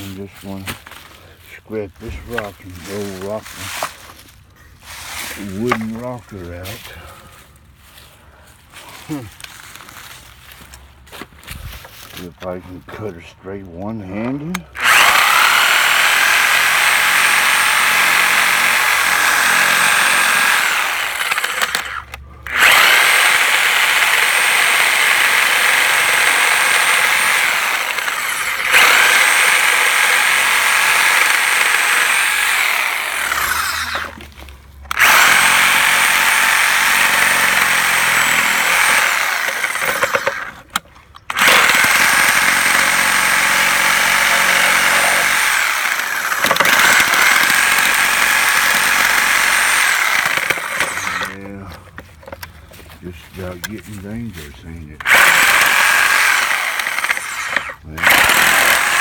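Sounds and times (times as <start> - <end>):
electric saw cutting wood: 14.7 - 51.5, 55.0 - 59.0.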